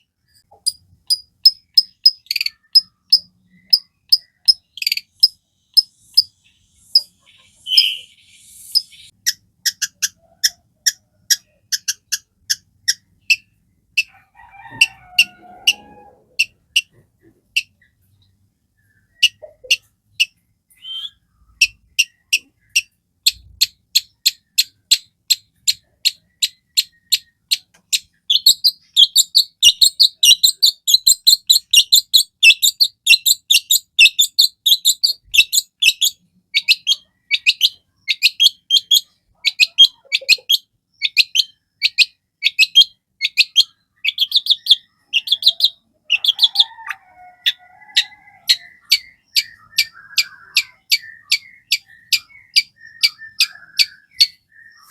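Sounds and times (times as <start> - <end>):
bird singing sharp high notes: 3.5 - 9.1.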